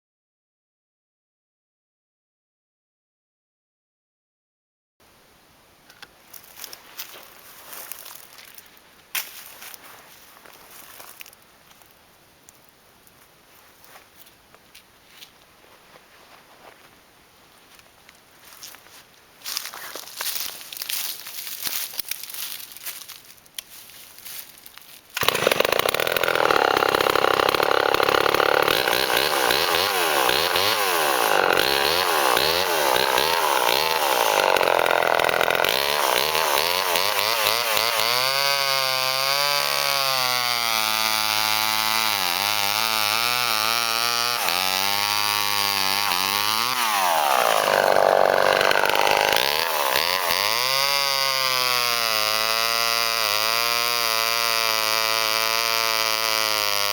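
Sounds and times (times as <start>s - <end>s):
chainsaw cutting wood: 25.2s - 56.9s.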